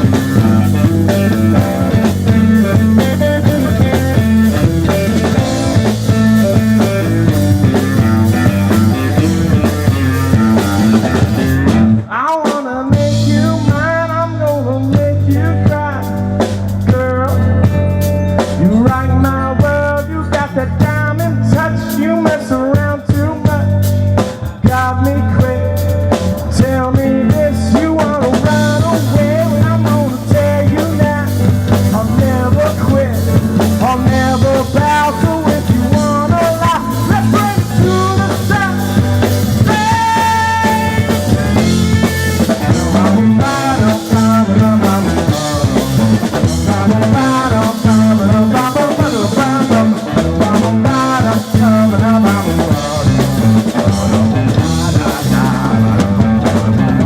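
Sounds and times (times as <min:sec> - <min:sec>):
lead guitar bending notes: 0:00.0 - 0:12.1, 0:27.1 - 0:57.0
bass guitar groove: 0:00.0 - 0:57.0
drum kit: 0:00.0 - 0:57.0.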